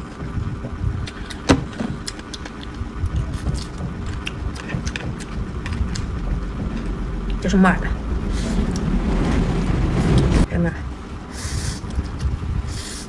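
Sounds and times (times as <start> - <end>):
chewing and mouth noises: 0.0 - 7.4
low rumble: 0.0 - 12.6.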